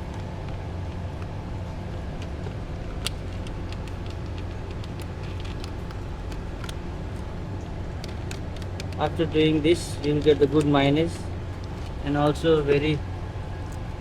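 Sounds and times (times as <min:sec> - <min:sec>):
low background rumble: 0:00.0 - 0:14.0
clicks of plastic parts handled: 0:03.0 - 0:07.2.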